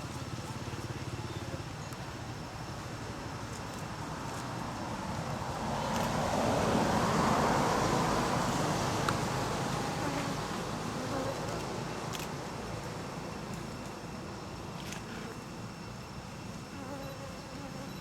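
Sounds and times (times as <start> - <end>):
vehicle passing by: 4.8 - 11.4.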